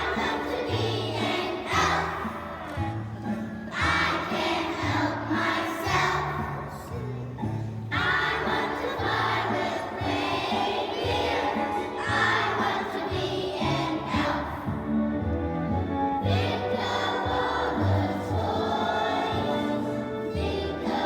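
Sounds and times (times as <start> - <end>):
children singing as a group: 0.0 - 7.0, 7.9 - 14.9, 16.2 - 21.0
instrumental accompaniment with bass: 0.0 - 21.0.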